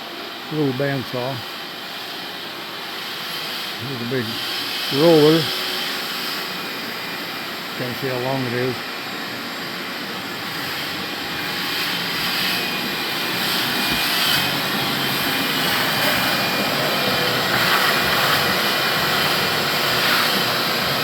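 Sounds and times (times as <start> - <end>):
machine running with rushing noise: 10.2 - 21.0.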